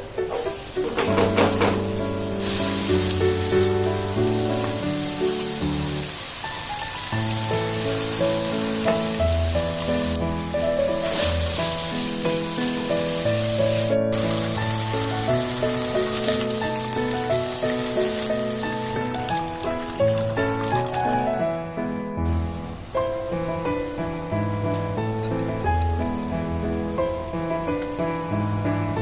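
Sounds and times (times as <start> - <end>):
food frying in a pan: 0.1 - 29.0
background music: 7.2 - 29.0.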